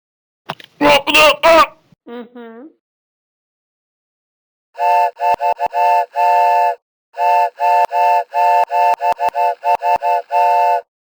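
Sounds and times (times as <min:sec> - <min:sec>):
horn chord tooting: 0:04.8 - 0:10.9.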